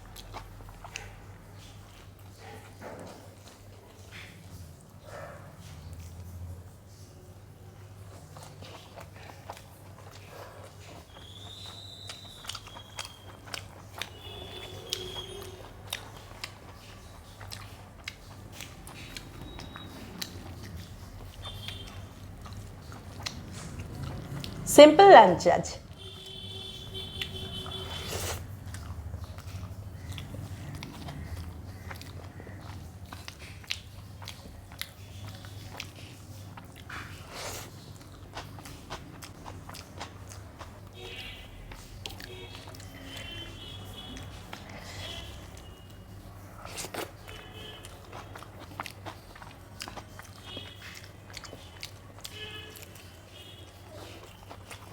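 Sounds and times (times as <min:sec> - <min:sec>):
person chewing food: 0:00.0 - 0:07.0, 0:07.7 - 0:24.7, 0:25.9 - 0:54.9.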